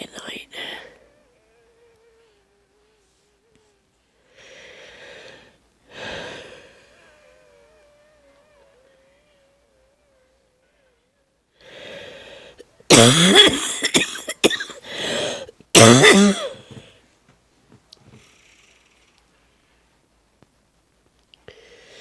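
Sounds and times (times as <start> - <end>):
faint breathing: 0.2 - 7.7, 11.6 - 12.8, 14.8 - 15.6, 21.4 - 22.0
rasping breath: 0.5 - 9.6, 11.6 - 12.7, 14.8 - 15.6, 21.5 - 22.0
woman coughing: 12.9 - 14.8, 15.8 - 16.6.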